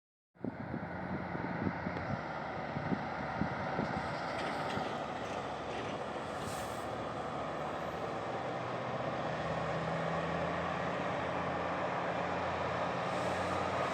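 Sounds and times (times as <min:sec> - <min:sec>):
heavy diesel machinery running: 0:00.4 - 0:13.9
brief hiss: 0:06.3 - 0:06.9.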